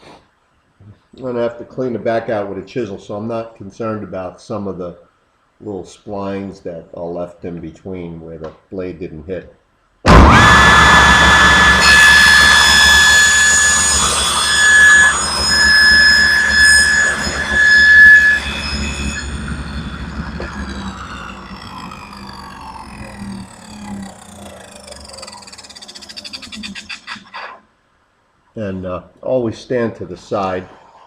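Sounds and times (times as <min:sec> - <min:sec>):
table saw whining: 0:10.1 - 0:27.6.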